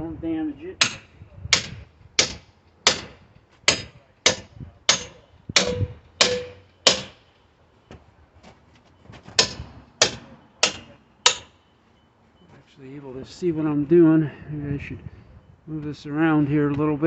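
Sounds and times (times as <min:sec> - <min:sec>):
sledgehammer blows: 0:00.8 - 0:07.2, 0:09.2 - 0:11.6.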